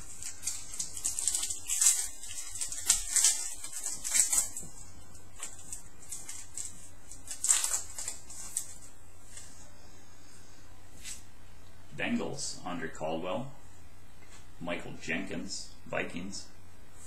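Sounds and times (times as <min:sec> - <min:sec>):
cards rustling: 0:00.0 - 0:09.5.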